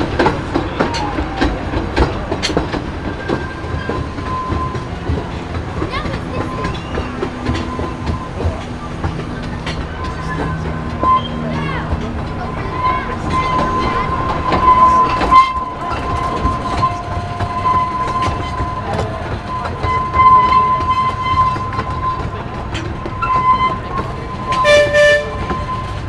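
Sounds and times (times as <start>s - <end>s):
train clattering on rails: 0.0s - 26.0s
high-pitched wheel squeal: 3.0s - 26.0s
train horn toot: 12.6s - 18.8s, 19.5s - 22.3s, 23.2s - 26.0s.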